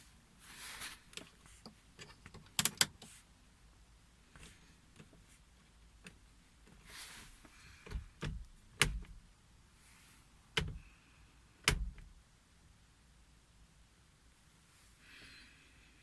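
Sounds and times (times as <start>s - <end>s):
car clicks and clunks: 7.8s - 9.2s, 10.6s - 10.8s, 11.6s - 12.1s.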